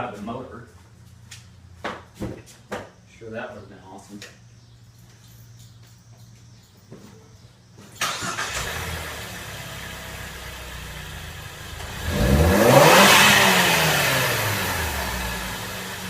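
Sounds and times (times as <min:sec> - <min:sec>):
car engine starting and revving: 0:08.0 - 0:16.0.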